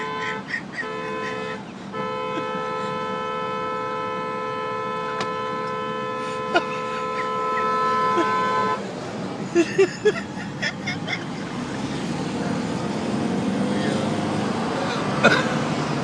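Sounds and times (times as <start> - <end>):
car horn honking: 0.0 - 8.8.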